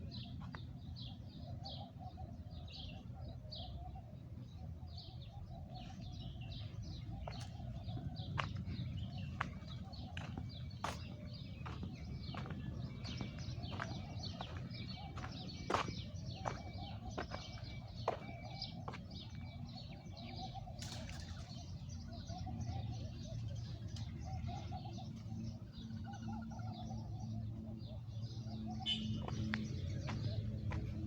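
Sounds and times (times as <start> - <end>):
small birds chirping: 0.0 - 31.0
steady low rumble: 4.4 - 20.4.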